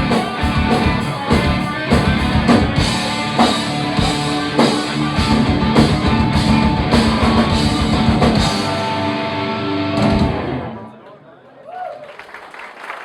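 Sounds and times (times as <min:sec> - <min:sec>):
drum and cymbal hits: 0:00.0 - 0:09.1
distorted electric guitars: 0:00.0 - 0:10.9.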